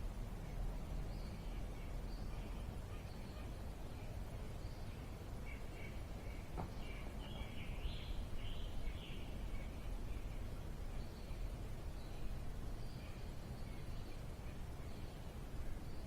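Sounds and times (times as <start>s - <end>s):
birds chirping faintly: 0.0s - 16.0s
low background rumble: 0.0s - 16.0s.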